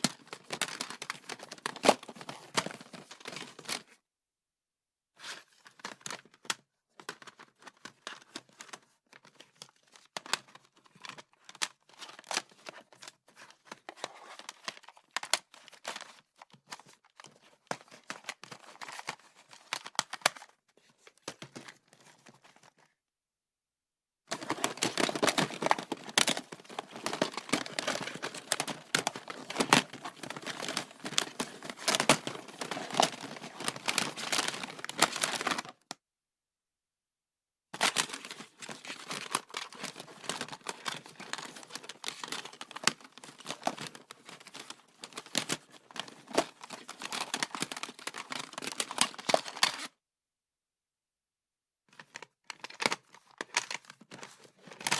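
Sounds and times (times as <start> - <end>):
stationery items clattering in drawer: 24.3 - 35.8.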